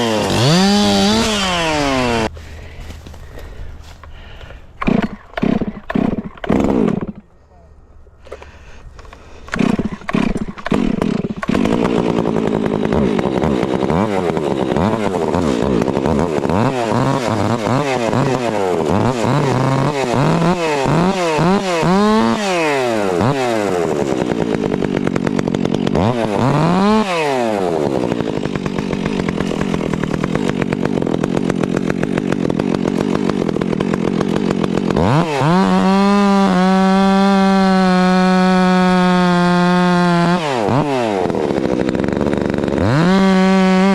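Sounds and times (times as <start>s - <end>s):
chainsaw cutting wood: 0.0s - 7.3s, 8.2s - 43.9s.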